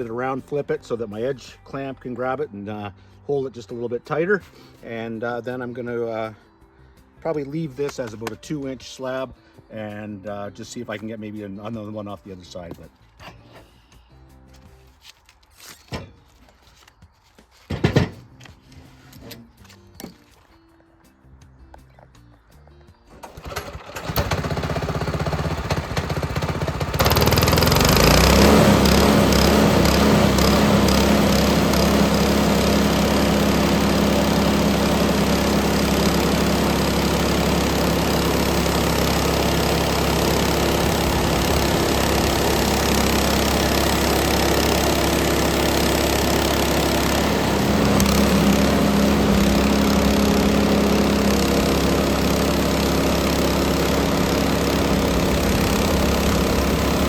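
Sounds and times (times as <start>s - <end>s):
band sawmill engine and blade: 23.2s - 57.0s.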